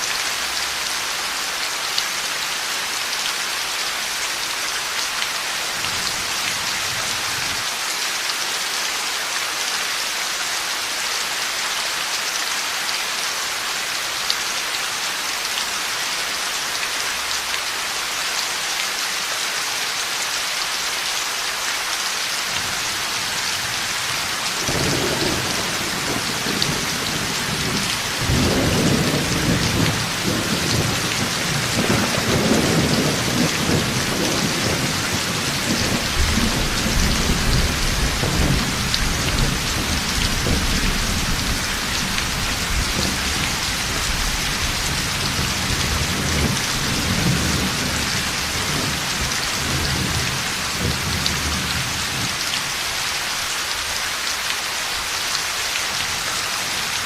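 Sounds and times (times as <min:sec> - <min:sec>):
heavy rain: 0:00.0 - 0:57.0
thunder rumbling: 0:24.6 - 0:50.2.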